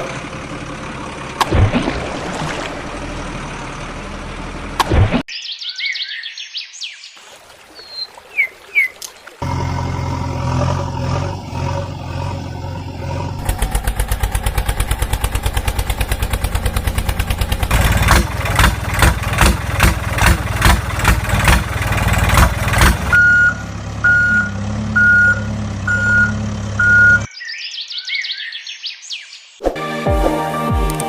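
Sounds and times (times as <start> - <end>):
truck engine running: 0.0 - 5.2, 9.4 - 27.3
reversing alarm beeping: 23.1 - 27.3.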